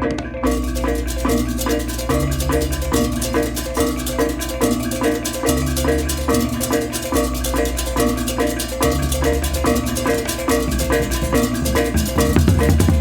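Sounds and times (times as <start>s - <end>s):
drums: 8.8s - 13.0s.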